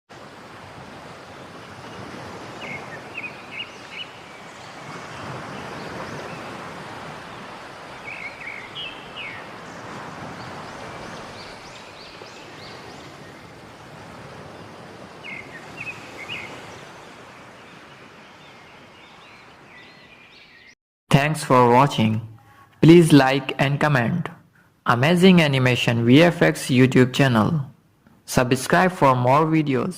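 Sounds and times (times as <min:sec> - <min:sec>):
birds chirping: 0:01.1 - 0:20.8.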